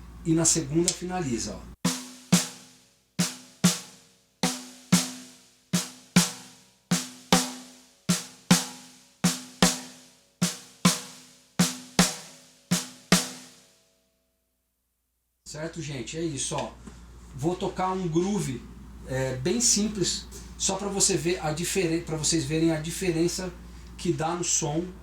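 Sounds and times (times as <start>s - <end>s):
snare drum double strokes: 1.9s - 13.6s.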